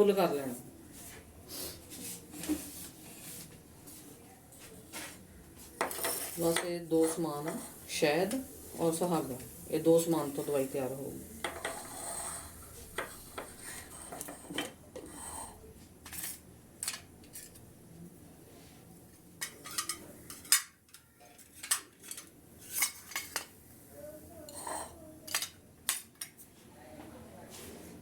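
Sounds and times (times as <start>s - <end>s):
utensils and dishes clinking: 19.4s - 23.6s, 24.5s - 26.4s.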